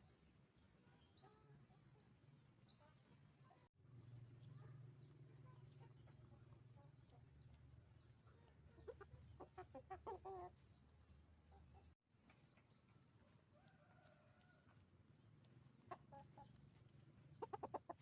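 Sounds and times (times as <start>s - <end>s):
hens clucking: 5.0s - 12.0s, 15.2s - 18.0s.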